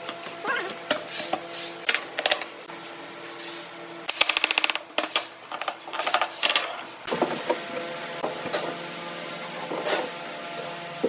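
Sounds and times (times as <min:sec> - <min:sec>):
rapid mechanical clicking: 0:04.1 - 0:06.7.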